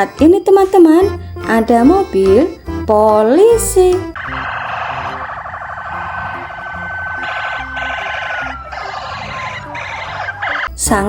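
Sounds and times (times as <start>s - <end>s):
police siren warbling: 4.2s - 10.9s.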